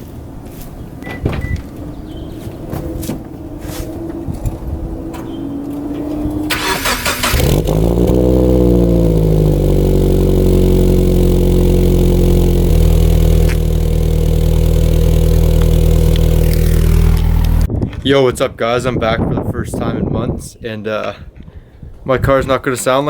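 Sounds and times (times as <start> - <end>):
car engine starting and idling: 3.3 - 17.7.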